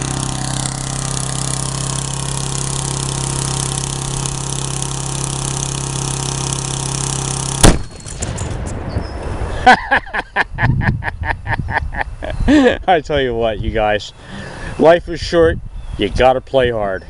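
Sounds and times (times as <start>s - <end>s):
lawnmower engine running: 0.0s - 8.6s
loud bang: 7.6s - 9.6s.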